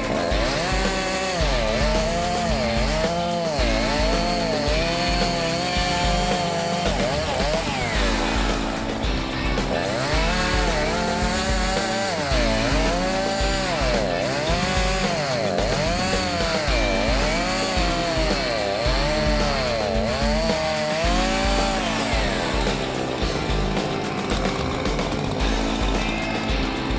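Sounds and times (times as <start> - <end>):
background music swooping melody: 0.0 - 26.9
held bass notes: 0.0 - 26.9.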